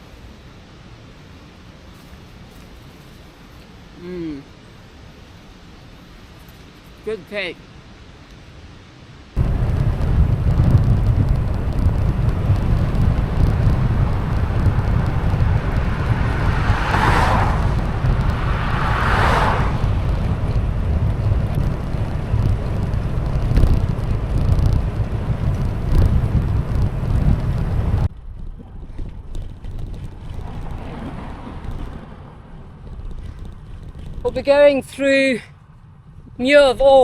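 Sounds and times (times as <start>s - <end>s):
vehicles passing by: 9.3s - 37.0s
wind buffeting microphone: 9.4s - 34.8s.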